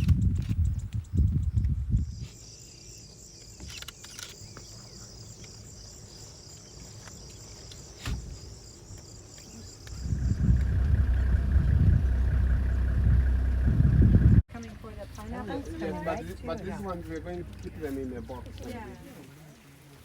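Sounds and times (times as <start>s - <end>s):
insects trilling: 2.0s - 11.5s.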